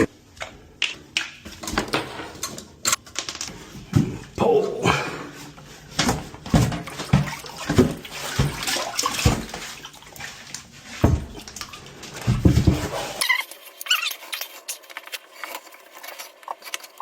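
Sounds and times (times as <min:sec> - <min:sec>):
plumbing knocks and clunks: 0:06.0 - 0:09.8, 0:11.0 - 0:13.1.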